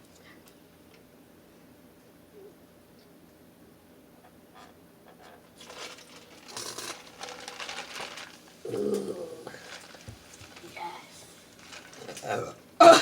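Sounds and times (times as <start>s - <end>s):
paper packaging crinkling: 5.5s - 12.6s.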